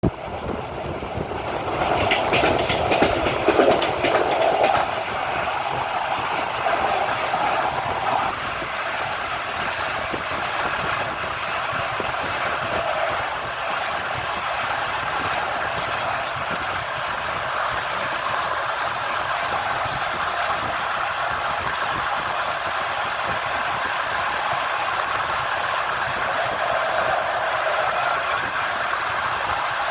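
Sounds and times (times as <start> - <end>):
train wheels clattering over rails: 0.0 - 29.9.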